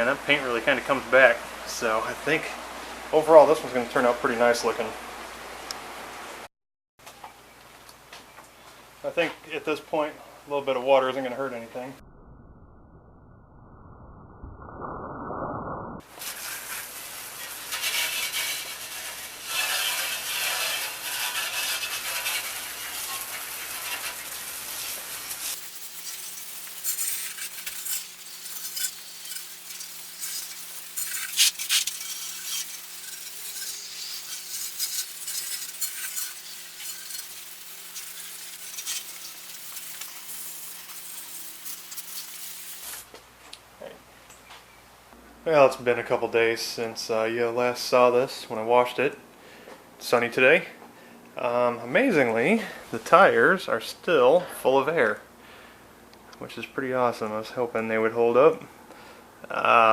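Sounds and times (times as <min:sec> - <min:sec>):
water spraying and splashing: 0:16.1 - 0:43.0.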